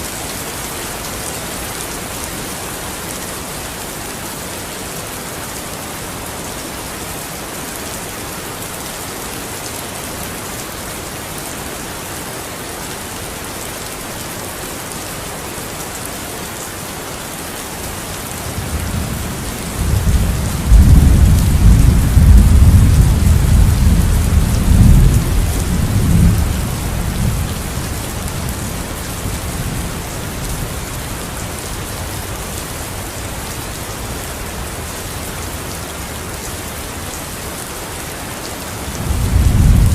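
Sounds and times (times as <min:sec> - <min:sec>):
steady rain falling: 0:00.0 - 0:39.9
thunder rumbling: 0:18.6 - 0:28.0, 0:39.0 - 0:39.9.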